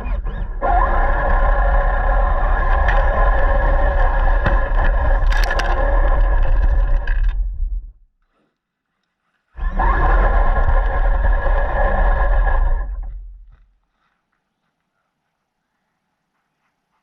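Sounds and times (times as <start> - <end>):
rc car motor whine: 0.0 - 7.4, 9.6 - 13.3.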